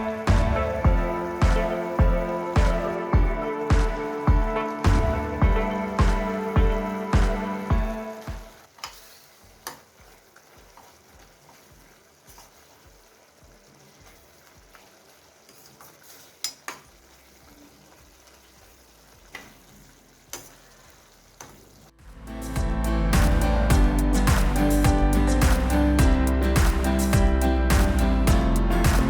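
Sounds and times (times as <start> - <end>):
chicken sizzling in a pan: 5.7 - 21.9.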